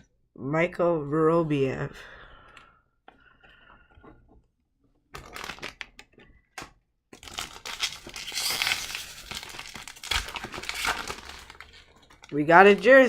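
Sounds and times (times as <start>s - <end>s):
wrapper tearing and crinkling: 5.2s - 6.0s, 7.2s - 13.0s.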